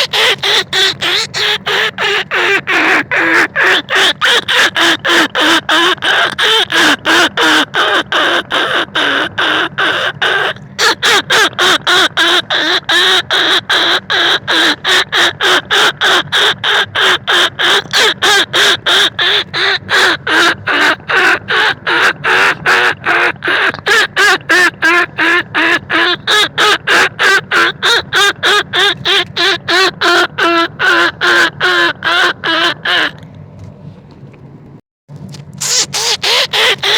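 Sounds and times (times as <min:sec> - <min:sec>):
harsh squeaky rat-luring call: 0:00.0 - 0:25.1, 0:35.6 - 0:36.9.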